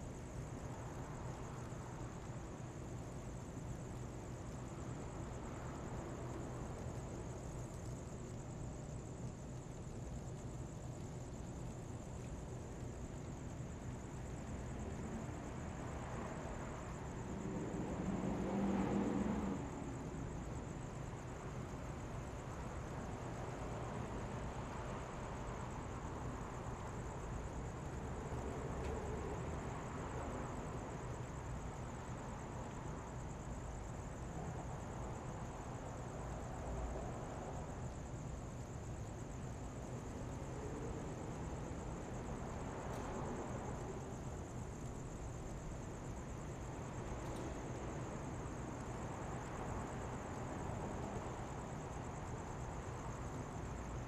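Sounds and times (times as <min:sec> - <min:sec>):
low traffic rumble: 0:00.1 - 0:54.0
vehicle passing: 0:17.4 - 0:19.9.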